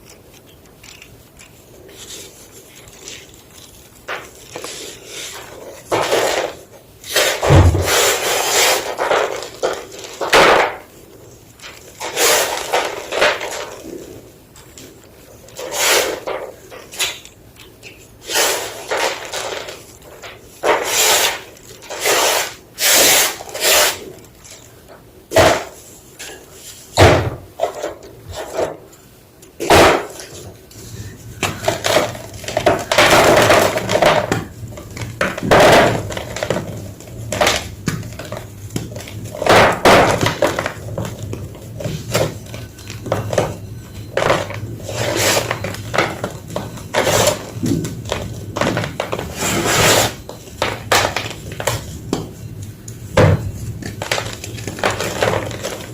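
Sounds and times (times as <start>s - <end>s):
chalk crunching: 0.0s - 6.4s.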